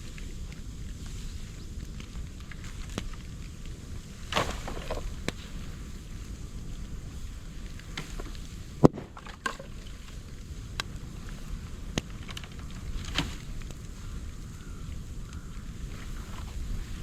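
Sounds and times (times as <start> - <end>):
bamboo fire popping and crackling: 0.0 - 17.0
low fire noise: 0.0 - 17.0.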